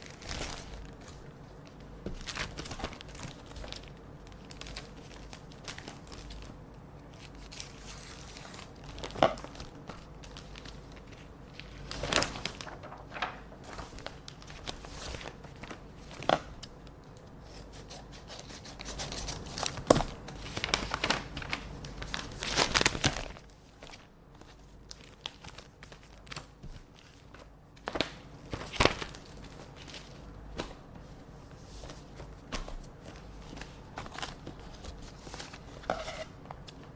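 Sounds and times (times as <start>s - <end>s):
paper crinkling and tearing: 7.1s - 16.4s, 17.5s - 30.2s.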